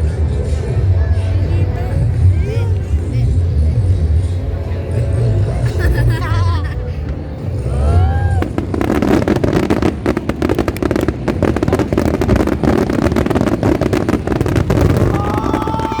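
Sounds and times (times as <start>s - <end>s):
low rumble: 0.0s - 16.0s
fireworks crackling: 6.9s - 16.0s.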